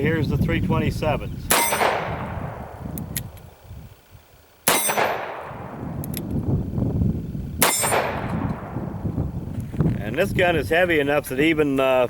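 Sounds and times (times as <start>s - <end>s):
revolver shot with ringing tail: 1.5s - 2.7s, 4.7s - 5.9s, 7.6s - 9.0s.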